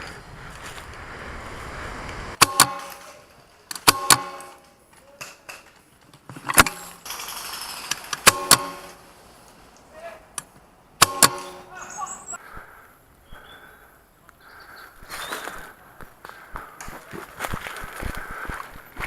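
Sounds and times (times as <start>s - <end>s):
airsoft guns firing: 11.0s - 11.6s.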